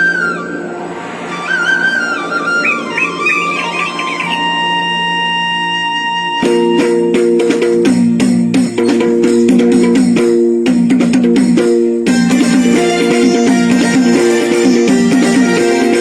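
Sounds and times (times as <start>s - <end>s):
plucked-string melody: 12.1s - 16.0s.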